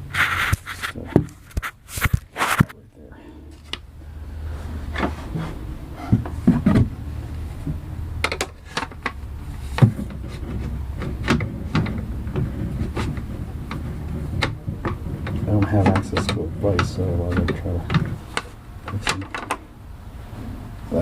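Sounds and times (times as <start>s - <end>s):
steady low hum: 0.0s - 21.0s
ceiling fan clicks and knocks: 4.9s - 19.8s.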